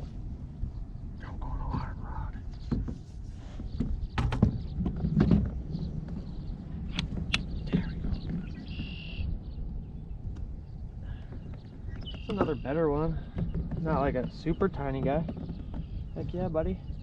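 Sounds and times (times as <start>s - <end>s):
wind rumbling on microphone: 0.0s - 17.0s
sharp knocks and clicks: 2.5s - 3.0s, 3.6s - 9.0s, 11.1s - 16.6s.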